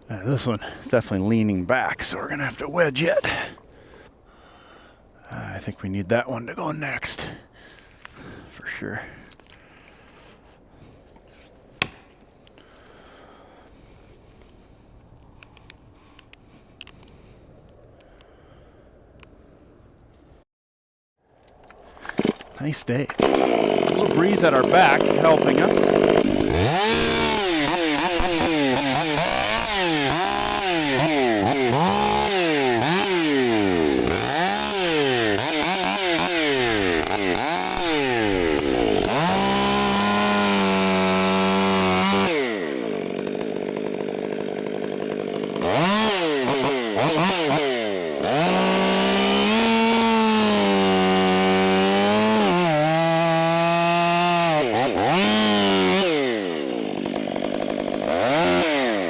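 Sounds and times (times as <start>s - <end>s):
chainsaw revving and idling: 22.0s - 59.0s.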